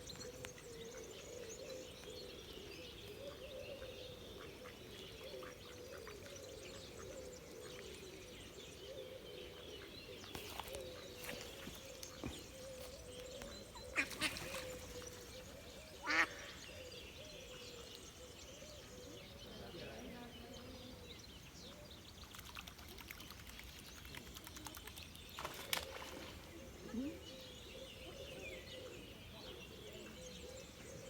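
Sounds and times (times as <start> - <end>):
faint birdsong: 0.0 - 31.0
ducks quacking: 16.0 - 16.4.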